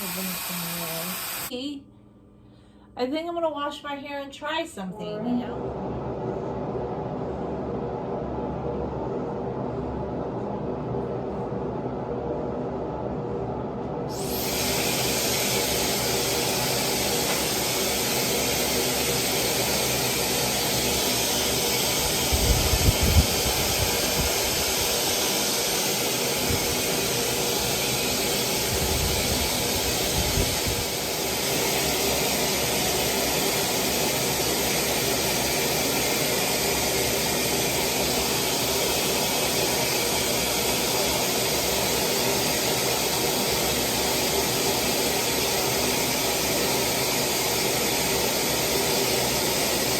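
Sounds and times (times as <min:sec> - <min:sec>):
hair dryer blowing: 0:00.0 - 0:01.6, 0:14.1 - 0:49.9.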